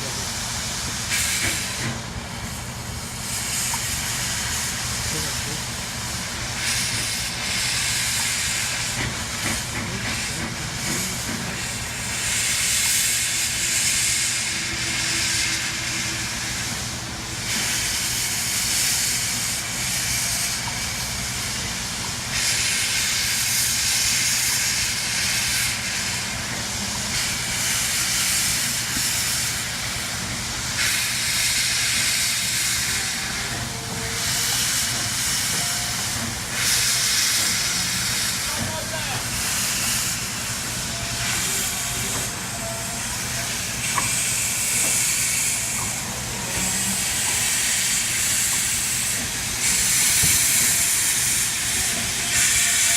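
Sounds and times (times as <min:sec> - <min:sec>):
steam locomotive hissing: 0:00.0 - 0:52.9.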